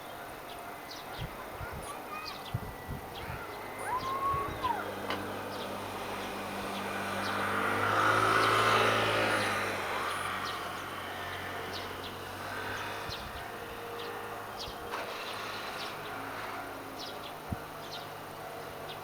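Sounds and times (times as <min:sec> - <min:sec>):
diesel locomotive passing: 0:00.0 - 0:19.0.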